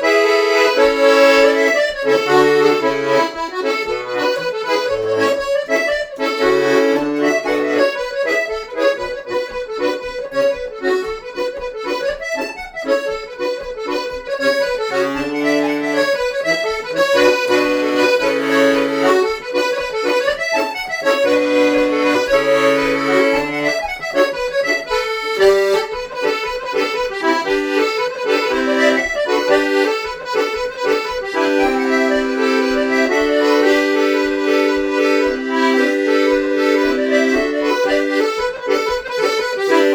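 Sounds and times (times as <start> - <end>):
accordion playing dance tune: 0.0 - 39.9.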